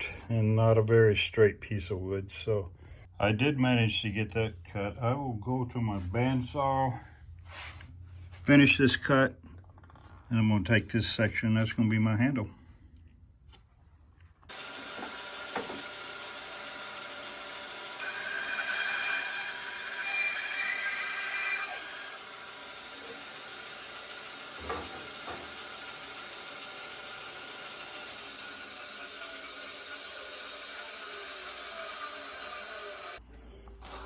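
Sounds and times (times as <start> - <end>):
bandsaw cutting wood: 14.5 - 33.2
bandsaw whining: 14.5 - 33.2.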